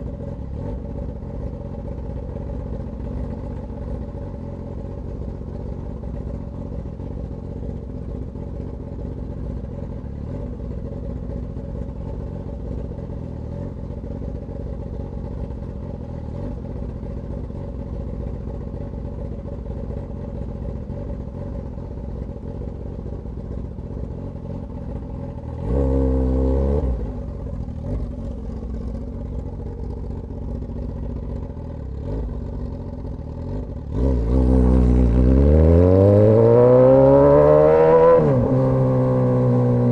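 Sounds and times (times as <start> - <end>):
motorcycle exhaust revving: 9.6 - 39.9.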